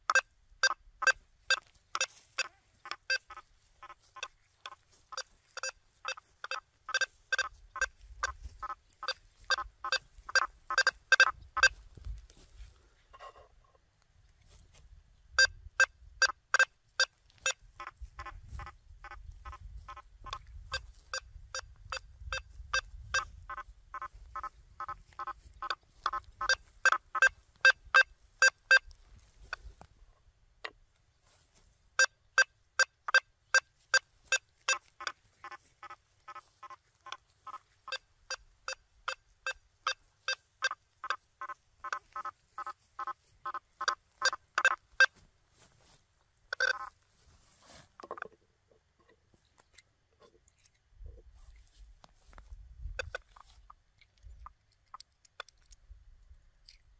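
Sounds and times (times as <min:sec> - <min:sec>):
metal detector short beeps: 0:00.1 - 0:03.4, 0:05.1 - 0:11.8, 0:15.4 - 0:17.6, 0:20.7 - 0:28.9, 0:32.0 - 0:35.1, 0:37.9 - 0:41.2, 0:43.8 - 0:45.2, 0:46.5 - 0:46.9.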